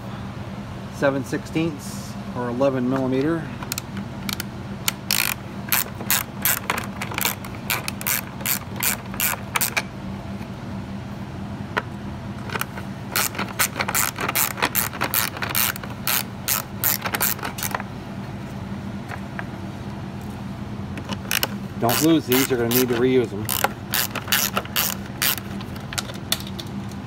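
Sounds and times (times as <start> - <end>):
socket ratchet clicking: 3.6 - 9.9, 12.4 - 17.8, 21.0 - 26.6.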